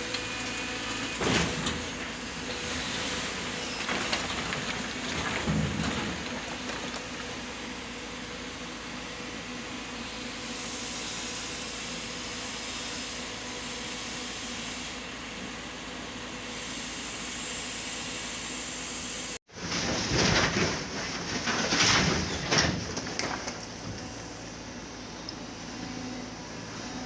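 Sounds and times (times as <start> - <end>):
heavy machinery engine running: 0.0 - 11.4
rough clattering: 19.6 - 24.0.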